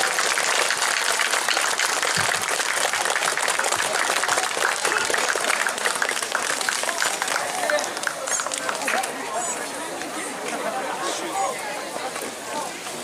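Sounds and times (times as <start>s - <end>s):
audience applauding: 0.0s - 9.6s.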